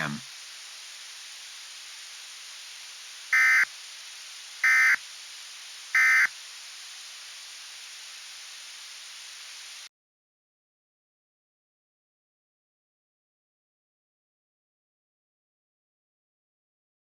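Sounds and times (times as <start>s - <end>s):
short data bursts: 0.0s - 9.9s
steady hiss: 0.0s - 9.9s.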